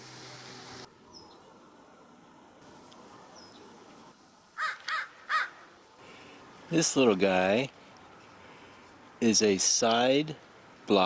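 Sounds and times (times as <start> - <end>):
crow cawing: 4.6 - 5.6.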